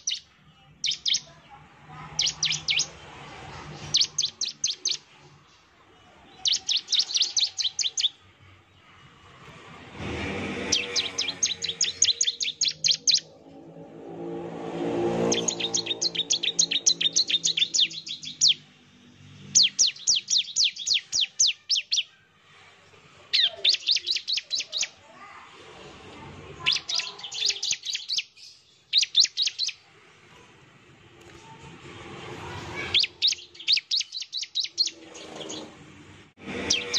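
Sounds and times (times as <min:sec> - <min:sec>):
bird singing rapid chip notes: 0:00.0 - 0:01.4, 0:02.1 - 0:03.0, 0:03.6 - 0:08.3, 0:10.6 - 0:13.8, 0:15.0 - 0:22.1, 0:23.3 - 0:25.0, 0:26.6 - 0:29.8, 0:32.9 - 0:35.7, 0:36.5 - 0:36.9.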